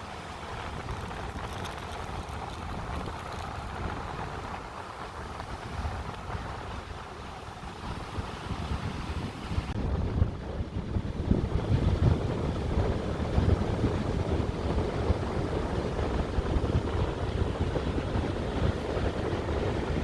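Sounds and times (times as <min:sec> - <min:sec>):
waves and surf: 0:00.0 - 0:20.0
wind buffeting the microphone: 0:00.0 - 0:20.0.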